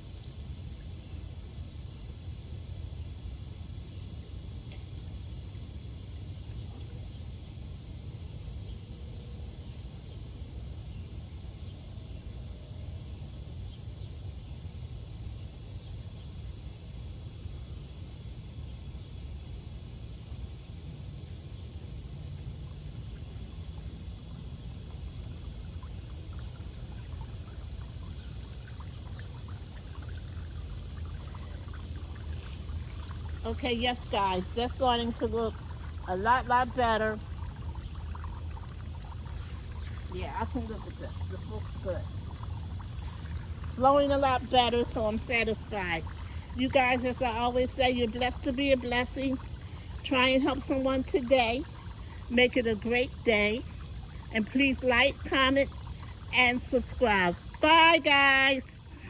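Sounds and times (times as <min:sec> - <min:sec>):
fountain water flowing: 0:22.2 - 0:59.0.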